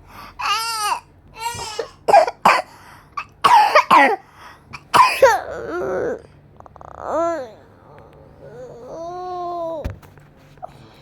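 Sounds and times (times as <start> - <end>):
person coughing: 1.6 - 5.7.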